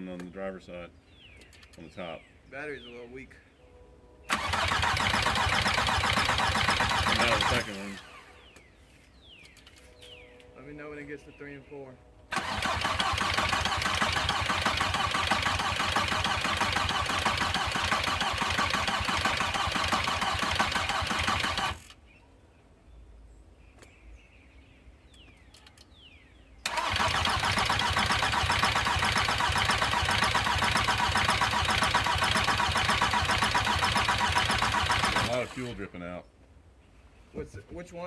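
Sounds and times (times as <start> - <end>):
diesel engine cranking: 4.3 - 8.5, 12.3 - 22.0, 26.6 - 35.9.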